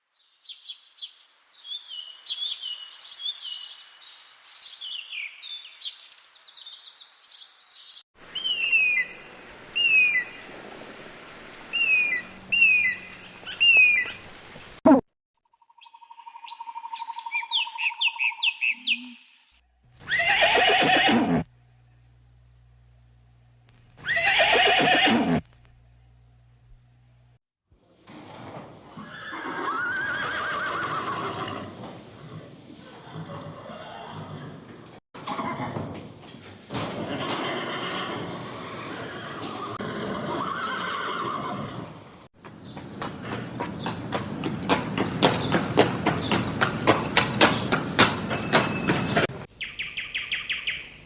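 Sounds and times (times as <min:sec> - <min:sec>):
birds trilling and chirping: 0:01.7 - 0:10.5, 0:11.7 - 0:14.3, 0:15.6 - 0:19.5, 0:40.5 - 0:51.0
animal calling: 0:08.3 - 0:09.2, 0:11.7 - 0:14.2
horse neighing: 0:20.0 - 0:21.5, 0:24.0 - 0:25.4, 0:28.9 - 0:35.8, 0:36.9 - 0:42.0.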